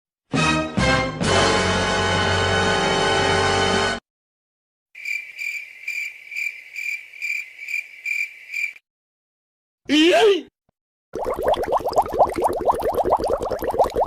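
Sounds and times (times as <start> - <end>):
crickets chirping: 5.0 - 8.8.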